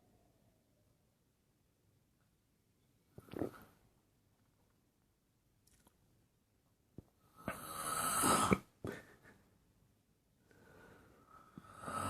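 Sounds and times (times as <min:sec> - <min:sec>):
man snoring: 0:07.4 - 0:08.7, 0:11.6 - 0:12.0
faint breath: 0:10.4 - 0:12.0.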